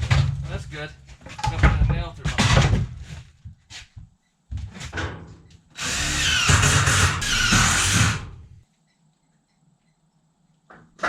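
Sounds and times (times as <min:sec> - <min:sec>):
handling knocks: 0:00.0 - 0:03.6
power drill driving screw through tin: 0:05.8 - 0:08.4.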